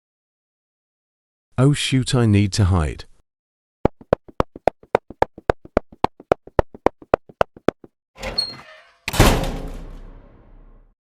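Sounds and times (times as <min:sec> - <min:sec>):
fast run of knocks: 0:03.9 - 0:07.9.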